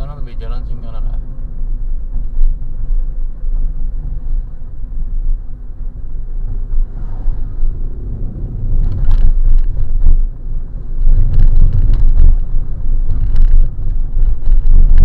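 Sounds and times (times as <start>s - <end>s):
car road and engine rumble: 0.0s - 15.0s
knocks and clatters: 8.8s - 10.2s, 11.0s - 15.0s.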